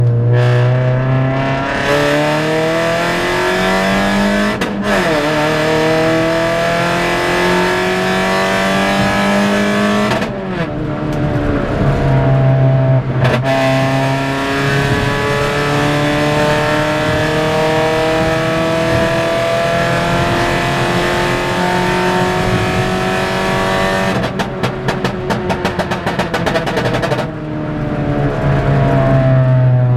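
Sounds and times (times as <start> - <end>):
car engine accelerating hard: 0.0 - 29.9
exhaust pops and crackles: 24.0 - 27.5.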